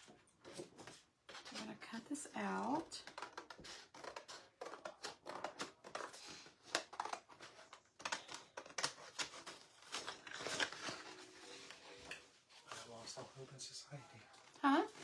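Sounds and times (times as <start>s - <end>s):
scissors snipping paper: 2.7s - 11.0s
paper rustle: 3.1s - 15.0s.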